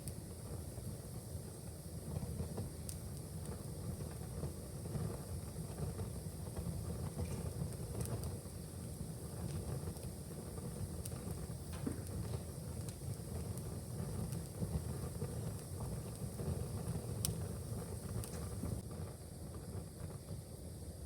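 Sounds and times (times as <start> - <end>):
fire crackling: 0.0 - 21.0
pops and snaps of fire: 2.1 - 18.9.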